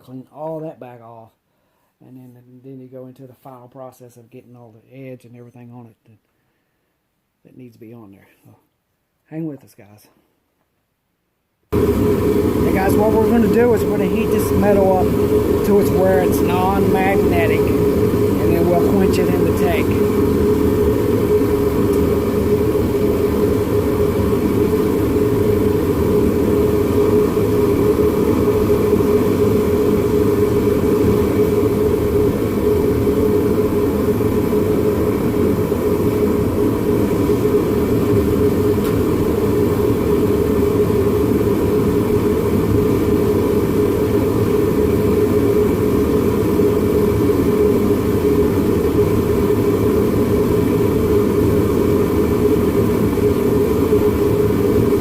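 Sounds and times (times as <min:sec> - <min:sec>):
forge rushing with steady hum: 0:11.7 - 0:55.0.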